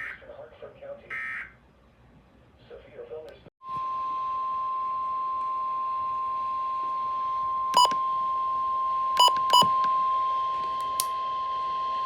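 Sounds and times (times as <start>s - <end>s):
short sharp beeps: 7.8s - 8.0s, 9.2s - 9.8s
steady alarm tone: 7.8s - 8.0s, 9.2s - 9.8s.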